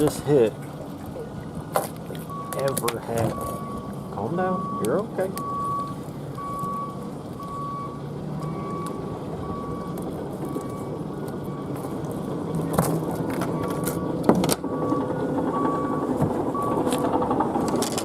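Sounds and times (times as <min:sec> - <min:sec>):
wind and boat rumble: 0:00.0 - 0:18.0
electronic alarm beeping: 0:02.3 - 0:12.1, 0:13.5 - 0:17.8.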